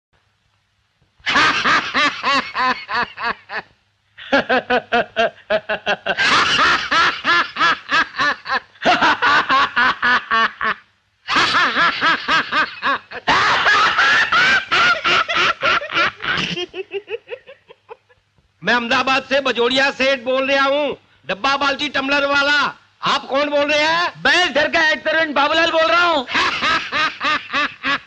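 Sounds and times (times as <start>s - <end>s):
high-pitched comic laughter: 1.3s - 18.2s, 26.2s - 28.0s.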